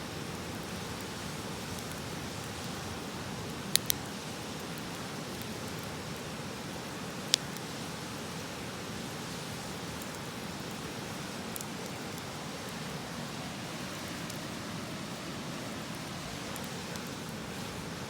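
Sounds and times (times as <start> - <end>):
campfire crackling: 0.0 - 18.0
fire popping: 0.1 - 18.0
river rushing: 10.2 - 18.0.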